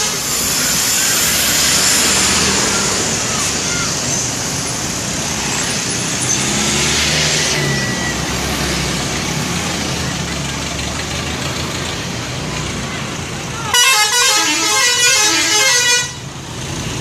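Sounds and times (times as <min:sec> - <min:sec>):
loud hiss: 0:00.0 - 0:06.4
bus engine running: 0:00.0 - 0:17.0.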